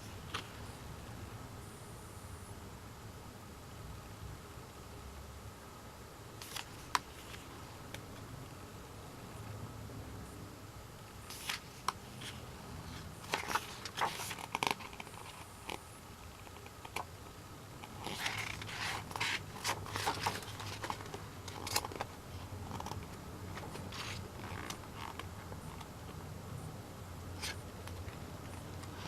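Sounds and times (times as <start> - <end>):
album packaging being handled: 6.4 - 8.2, 11.3 - 17.1, 17.8 - 26.0.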